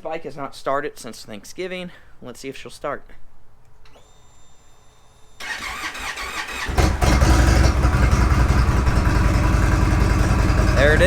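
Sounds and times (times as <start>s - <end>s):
faint high whine: 3.8s - 5.4s
starter motor cranking: 5.4s - 9.6s
motorcycle engine running: 6.7s - 11.0s.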